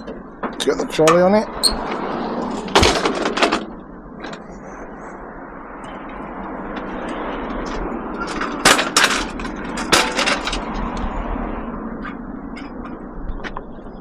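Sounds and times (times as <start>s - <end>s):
steady rumbling noise: 0.0s - 14.0s
loud metallic clanks and knocks: 1.8s - 4.4s, 7.6s - 11.0s.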